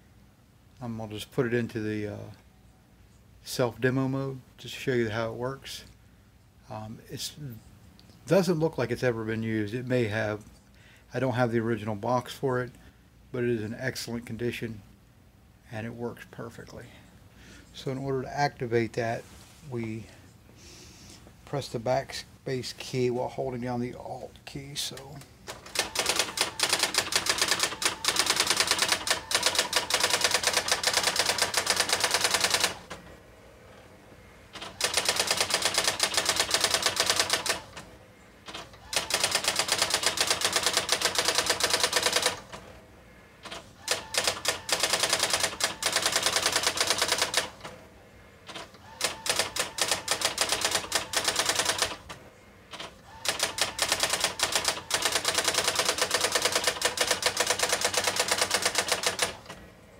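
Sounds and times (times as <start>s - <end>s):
electronic typewriter printing: 24.9s - 33.1s, 34.5s - 42.7s, 43.4s - 47.8s, 48.5s - 59.6s.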